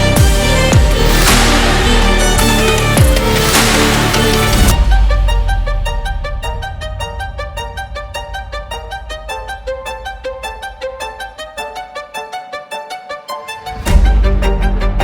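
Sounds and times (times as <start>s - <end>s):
low bass: 0.0s - 9.0s
quick violin-like notes: 0.0s - 15.0s.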